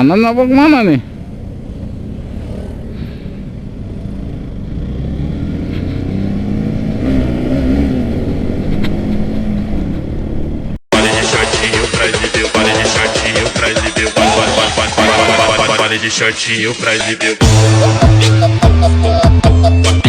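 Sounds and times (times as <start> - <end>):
motorcycle engines in traffic: 0.0 - 10.8.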